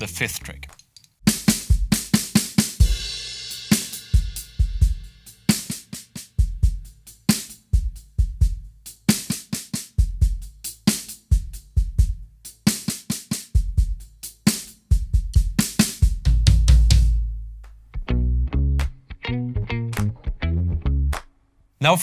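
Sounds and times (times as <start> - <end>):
bass drum: 1.2 - 3.2, 11.4 - 12.4, 15.0 - 21.2.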